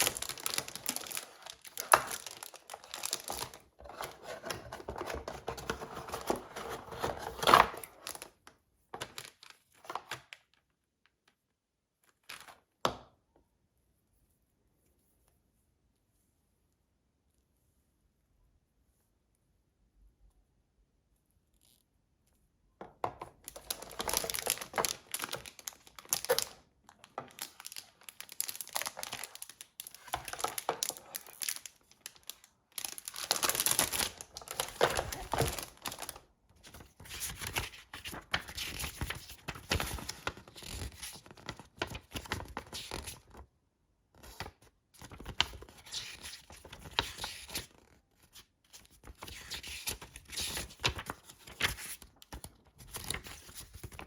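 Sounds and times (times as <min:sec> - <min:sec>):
packaging crinkling and tearing: 0:00.0 - 0:10.6, 0:23.4 - 0:43.4.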